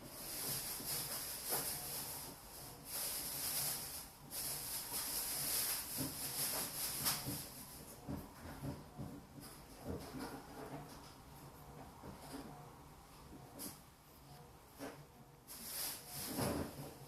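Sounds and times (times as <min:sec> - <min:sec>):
washing machine swishing: 0:00.0 - 0:17.0.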